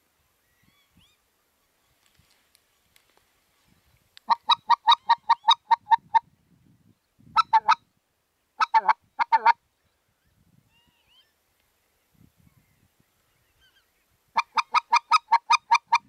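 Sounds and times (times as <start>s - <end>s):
goose honking: 7.4s - 7.8s.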